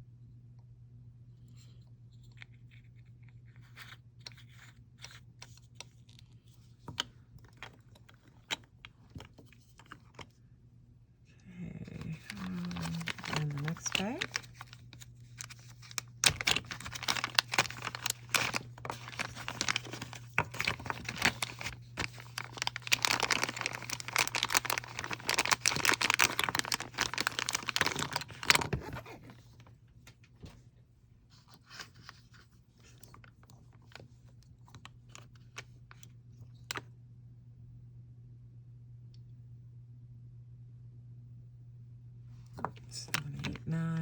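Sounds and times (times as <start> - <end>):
steady low hum: 0.0 - 44.0
plastic bag crinkling and tearing: 12.1 - 29.6
small items clicking: 12.2 - 28.7.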